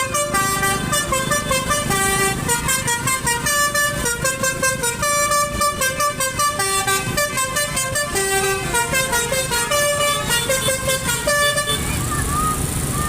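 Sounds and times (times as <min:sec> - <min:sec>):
horn playing fast melody: 0:00.0 - 0:12.0
low engine rumble: 0:00.0 - 0:13.0.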